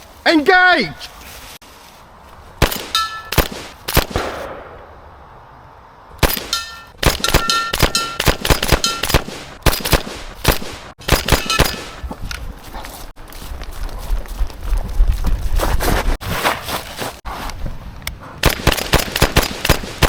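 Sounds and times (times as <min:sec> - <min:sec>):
airsoft gun shots: 0:02.6 - 0:04.9, 0:06.2 - 0:12.0, 0:18.4 - 0:20.0.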